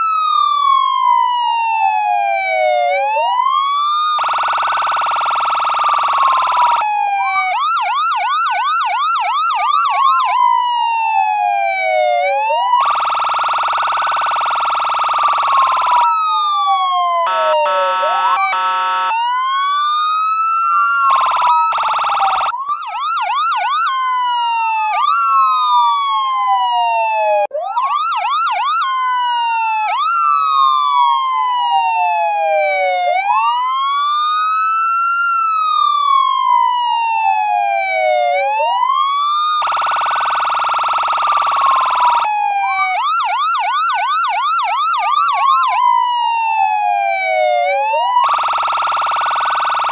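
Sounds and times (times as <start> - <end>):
police siren: 0.0 - 49.9
buzzing horn blast: 17.3 - 19.2.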